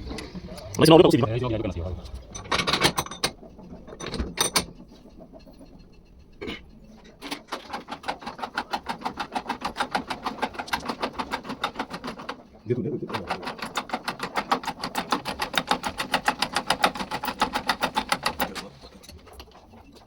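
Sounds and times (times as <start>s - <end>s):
rapid even clicking: 7.2s - 20.0s.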